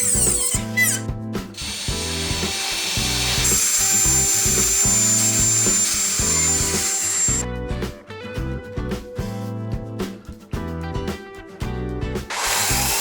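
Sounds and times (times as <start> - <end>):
power tool working wood: 0.0 - 1.0, 1.6 - 7.4, 12.3 - 13.0
background music: 0.0 - 13.0.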